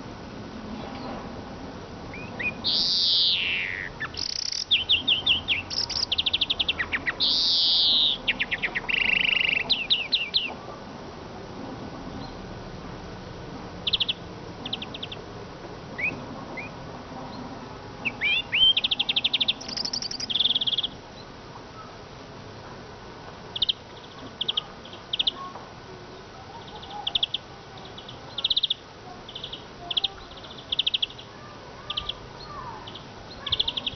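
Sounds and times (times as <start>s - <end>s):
siskin singing buzzy trills: 2.0s - 10.6s, 13.8s - 15.3s, 16.0s - 21.9s, 23.5s - 33.9s.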